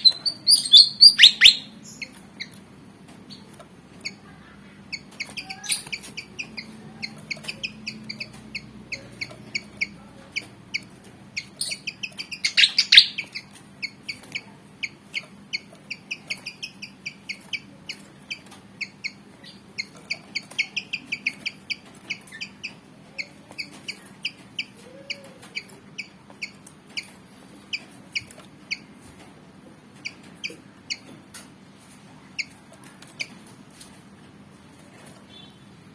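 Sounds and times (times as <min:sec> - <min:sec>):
bird chirping sharply: 0:00.0 - 0:02.5, 0:11.4 - 0:13.5.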